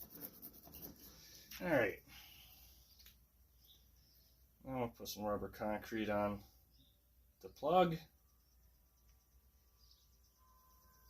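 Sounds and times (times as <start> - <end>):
faint click: 3.0 - 3.2.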